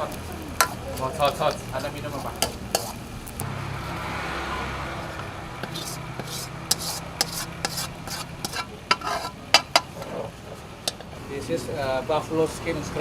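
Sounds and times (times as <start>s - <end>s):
noodles sizzling in a wok: 0.0s - 3.4s, 4.6s - 11.4s
metal spatula clacking on wok: 0.6s - 3.0s, 5.6s - 10.0s, 10.8s - 11.2s.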